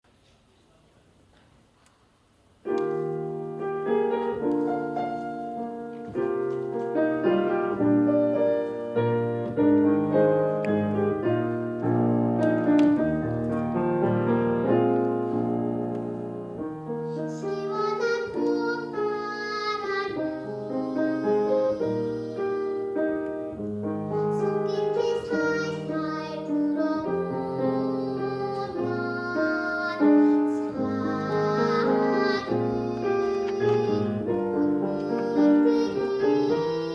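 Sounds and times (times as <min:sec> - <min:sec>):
piano accompaniment: 0:02.6 - 0:36.9
child singing: 0:17.1 - 0:23.4, 0:24.1 - 0:36.9.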